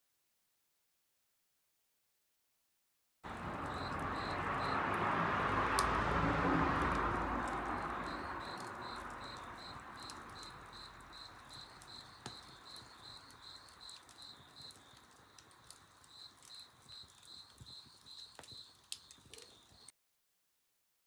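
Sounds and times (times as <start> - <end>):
bonfire crackles: 3.2 - 19.9
cricket chirping: 3.3 - 19.9.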